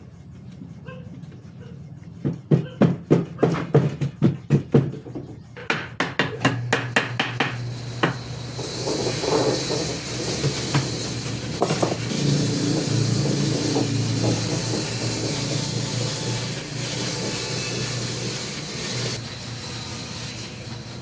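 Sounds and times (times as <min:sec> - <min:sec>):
hammer blows on wood: 0:05.7 - 0:21.0.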